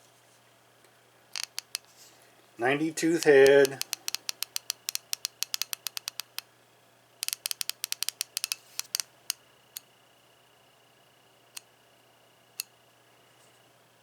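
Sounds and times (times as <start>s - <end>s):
ratchet clicking: 1.4s - 1.9s, 3.2s - 6.4s, 7.2s - 9.0s.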